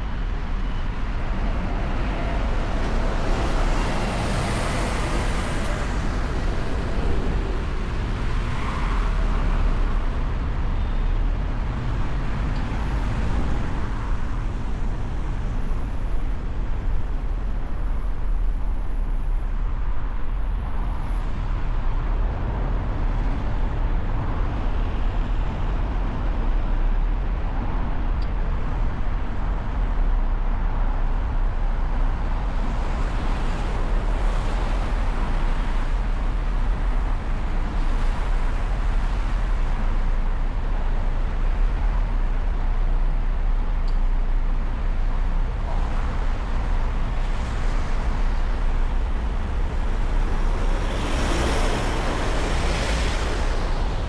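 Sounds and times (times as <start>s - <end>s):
passing cars and scooters: 0.0s - 17.6s, 31.3s - 54.0s.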